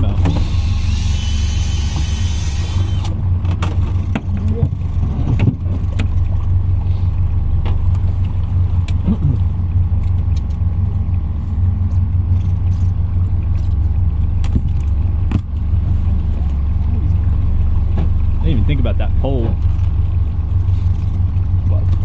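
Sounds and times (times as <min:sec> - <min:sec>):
outboard motor droning: 0:00.0 - 0:22.0.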